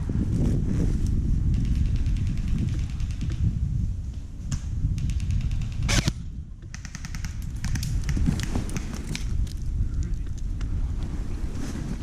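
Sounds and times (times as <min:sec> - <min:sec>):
wind rumble on microphone: 0:00.0 - 0:12.0
camera handling noise: 0:05.8 - 0:06.2
rapid airsoft gunfire: 0:06.7 - 0:09.0.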